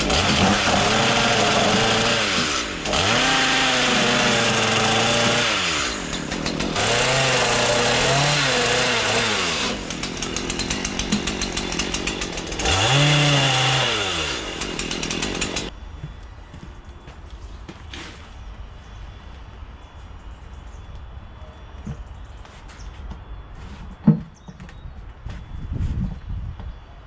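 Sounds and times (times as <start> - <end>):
chainsaw cutting wood: 0.0 - 15.7.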